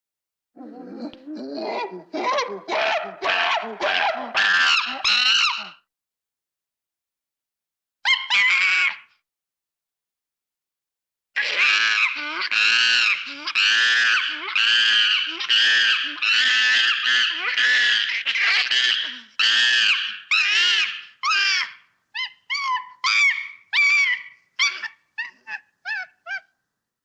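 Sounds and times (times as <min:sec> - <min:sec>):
monkey calling: 0:01.0 - 0:05.8, 0:11.4 - 0:26.5.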